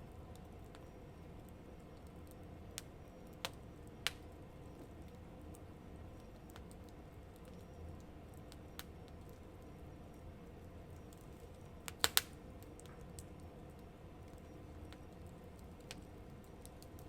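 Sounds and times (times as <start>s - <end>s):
campfire crackling: 0.0s - 17.0s
sharp fire pops: 2.8s - 4.2s, 11.8s - 12.9s.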